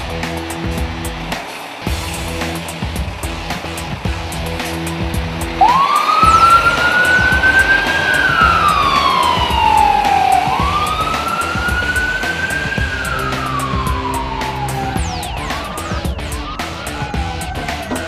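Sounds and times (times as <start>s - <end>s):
background music: 0.0s - 18.0s
fire engine siren wailing: 4.2s - 18.0s.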